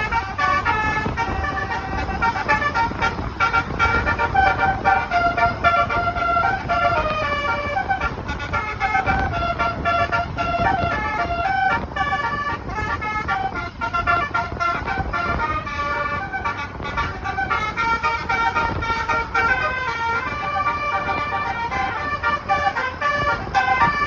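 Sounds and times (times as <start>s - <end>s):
multi-tone bus horn tune: 0.0s - 24.0s.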